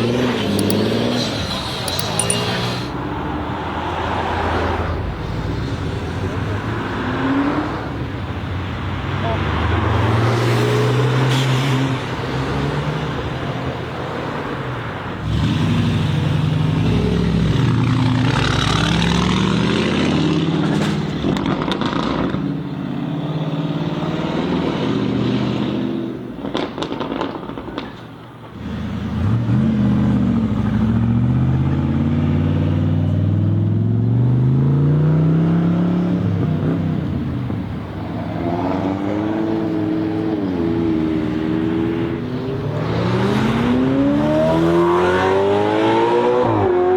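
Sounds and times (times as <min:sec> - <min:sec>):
sports car engines revving: 0:00.0 - 0:27.6, 0:28.4 - 0:46.9.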